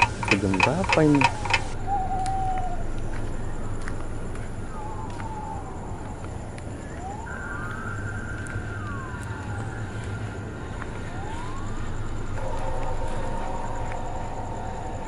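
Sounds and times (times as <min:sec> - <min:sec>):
low traffic rumble: 0:00.0 - 0:15.0
siren wailing: 0:00.0 - 0:15.0.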